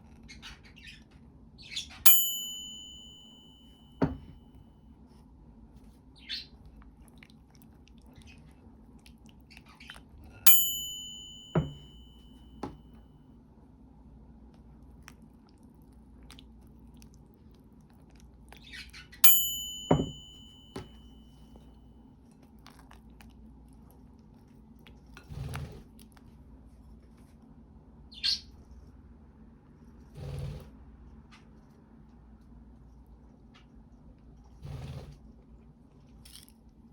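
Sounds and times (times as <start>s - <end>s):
kitchenware clinking: 2.1s - 4.4s, 10.5s - 12.2s, 19.2s - 21.0s.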